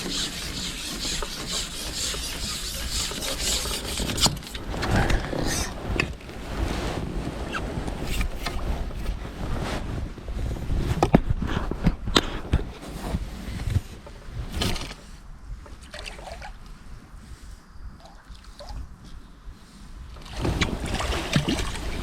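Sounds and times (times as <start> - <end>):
rumble: 3.8 - 22.0
water sloshing: 15.8 - 16.6.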